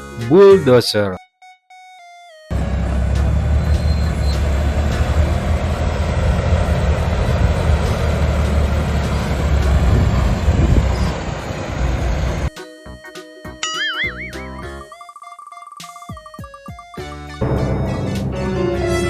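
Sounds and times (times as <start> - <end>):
bulldozer diesel engine running: 2.5 - 12.5.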